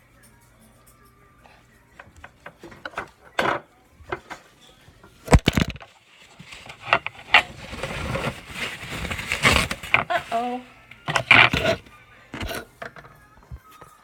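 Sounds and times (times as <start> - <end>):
utensil scraping a bowl: 11.0 - 13.0.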